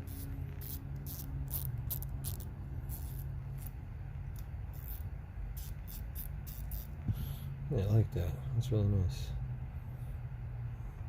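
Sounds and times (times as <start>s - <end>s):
ratchet clicking: 0.0s - 7.0s
steady low hum: 0.0s - 11.0s.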